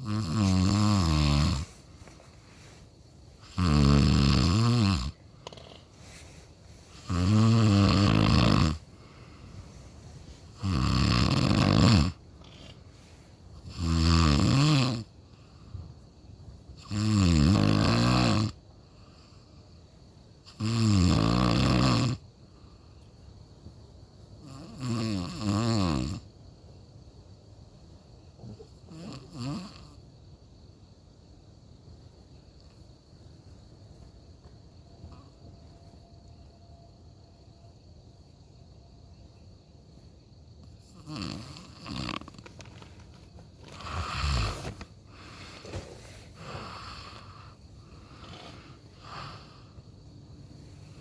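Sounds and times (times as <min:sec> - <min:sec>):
person snoring: 0:00.0 - 0:01.8, 0:03.4 - 0:05.9, 0:07.0 - 0:08.9, 0:10.5 - 0:12.8, 0:13.7 - 0:15.1, 0:41.0 - 0:42.4, 0:43.7 - 0:49.8
quiet breathing: 0:00.0 - 0:10.6, 0:12.2 - 0:13.8, 0:15.2 - 0:16.5, 0:18.7 - 0:20.3, 0:22.3 - 0:23.4, 0:39.9 - 0:51.0.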